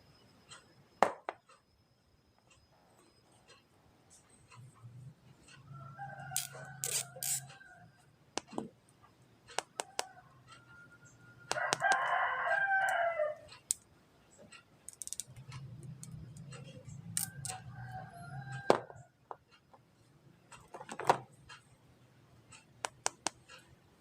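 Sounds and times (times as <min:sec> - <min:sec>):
rooster crowing: 0:05.6 - 0:08.0, 0:09.8 - 0:13.5, 0:17.2 - 0:19.1
sharp clicks: 0:22.5 - 0:23.7.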